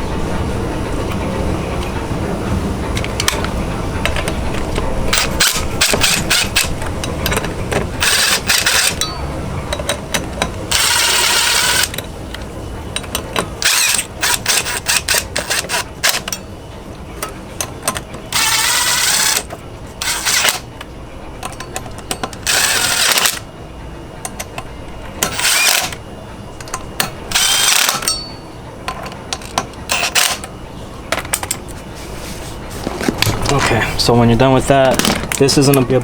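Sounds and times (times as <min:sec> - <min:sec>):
power driver spinning bolts: 0:02.8 - 0:16.5, 0:17.2 - 0:23.5, 0:24.2 - 0:31.8
clicks and knocks of tools: 0:02.9 - 0:16.5, 0:17.2 - 0:23.5, 0:24.2 - 0:26.0, 0:26.6 - 0:30.5, 0:31.1 - 0:31.8.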